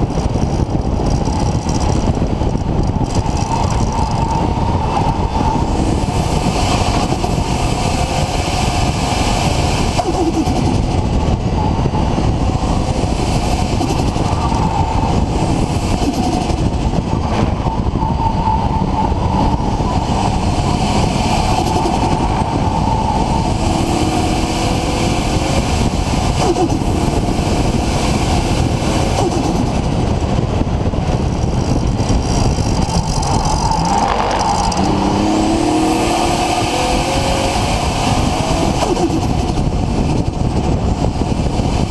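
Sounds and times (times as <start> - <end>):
turbocharged car engine running: 0.0 - 41.9.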